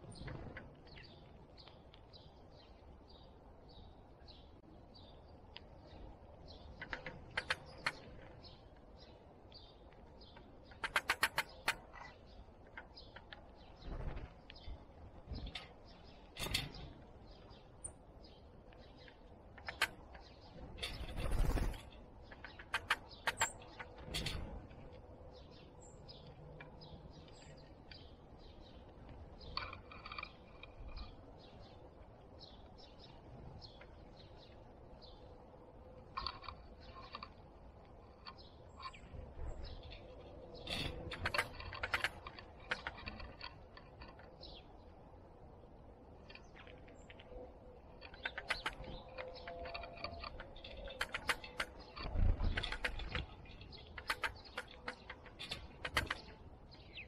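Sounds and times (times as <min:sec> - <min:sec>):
small birds chirping: 0:00.0 - 0:57.0
sharp taps and knocks: 0:48.0 - 0:56.4.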